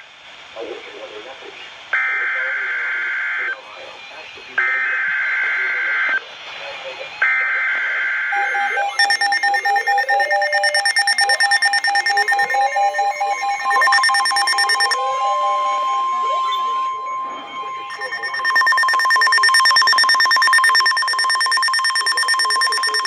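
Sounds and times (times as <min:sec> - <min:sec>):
rapidly pulsing alarm beeps: 0:02.0 - 0:23.0
weather radio warning alert tone: 0:06.9 - 0:23.0.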